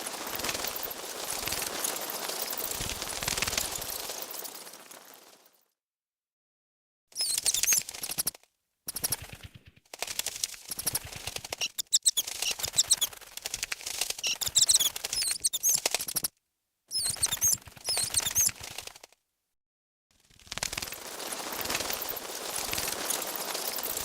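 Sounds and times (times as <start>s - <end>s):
bat wingbeats fluttering: 0.0s - 5.7s, 7.2s - 16.3s, 16.9s - 19.2s, 20.2s - 24.0s
bat high squeaks: 11.6s - 13.1s, 16.9s - 18.5s.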